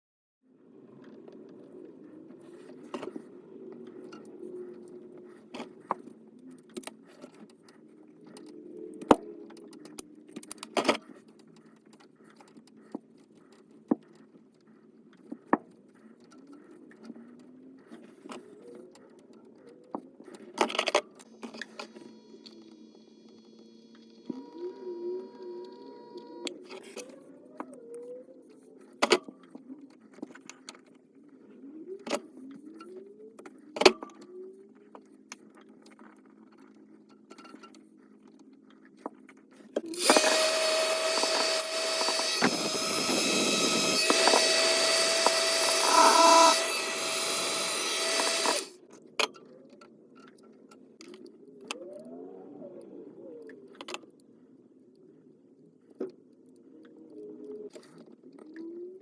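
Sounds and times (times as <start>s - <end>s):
tools clicking and scraping: 1.0s - 22.6s, 32.0s - 51.8s
small motor whining: 21.2s - 28.4s, 39.8s - 48.8s.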